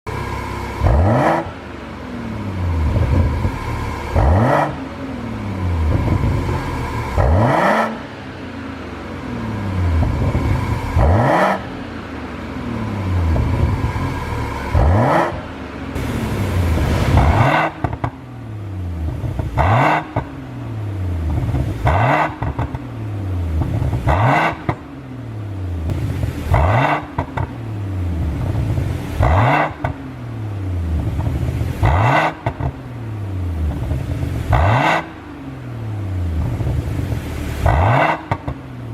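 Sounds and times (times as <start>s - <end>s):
car engine revving: 0.1s - 38.9s
exhaust pops and crackles: 2.7s - 4.9s, 5.8s - 8.0s, 9.8s - 11.7s, 13.1s - 25.0s, 25.8s - 35.2s, 36.3s - 38.9s.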